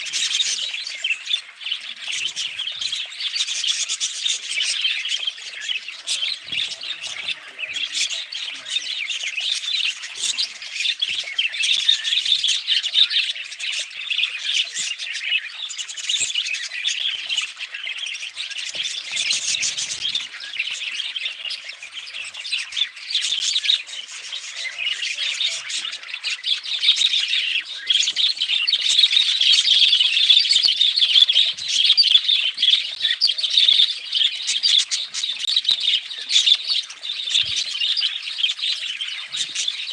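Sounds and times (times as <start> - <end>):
budgies chirping: 0.0 - 39.9.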